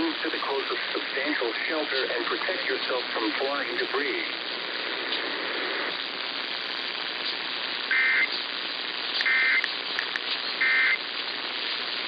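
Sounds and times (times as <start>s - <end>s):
radio static hiss: 0.0s - 12.0s
warbling data tone bursts: 7.9s - 8.3s, 9.2s - 9.7s, 10.6s - 11.0s.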